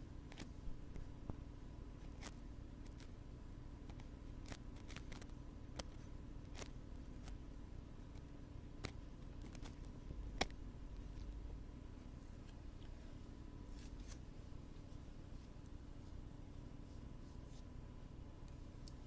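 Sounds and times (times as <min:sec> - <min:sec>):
steady low hum: 0:00.0 - 0:19.0
ear-cleaning tools clicking and scratching: 0:08.1 - 0:11.3.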